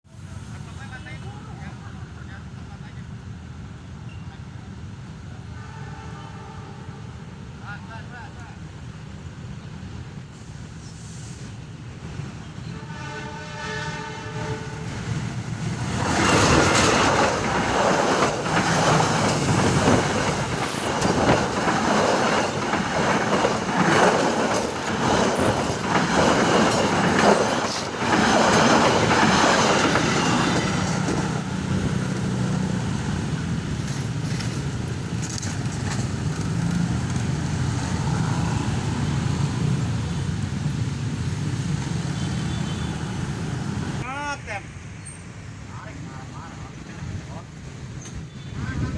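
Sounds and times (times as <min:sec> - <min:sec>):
train wheels clattering over rails: 0:14.9 - 0:42.8.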